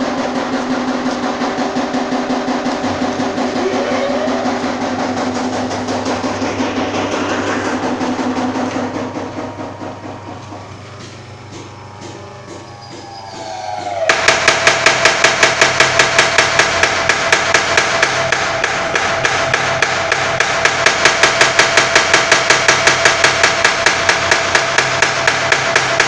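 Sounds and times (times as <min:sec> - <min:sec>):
power hammer pounding: 0:00.0 - 0:26.0.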